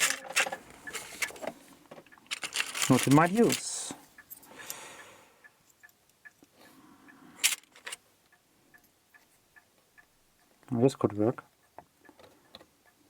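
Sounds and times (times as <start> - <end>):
metal tools clicking: 0.0 - 1.5, 2.3 - 4.8, 7.4 - 8.0
small tools rummaged in a box: 0.0 - 1.6, 2.3 - 4.4, 7.4 - 8.0.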